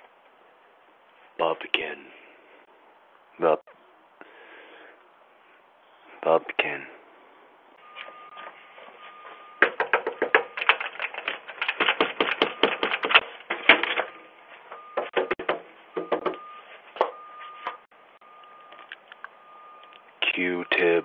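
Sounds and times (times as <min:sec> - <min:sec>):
rapid clicking and clattering: 0:09.6 - 0:14.0.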